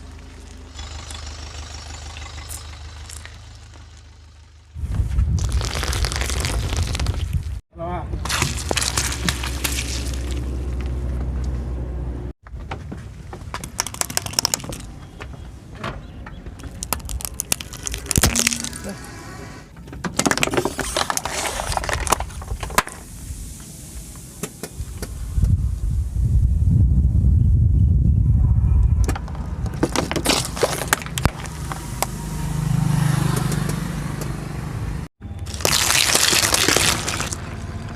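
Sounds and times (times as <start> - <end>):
car engine idling: 0.0 - 4.8
low car engine: 0.0 - 5.4, 9.0 - 13.7, 30.8 - 37.9
brittle object crushed under tyre: 0.4 - 4.2, 8.2 - 10.9, 13.5 - 14.9, 16.6 - 18.9, 20.2 - 23.0, 29.7 - 31.7, 35.4 - 37.7.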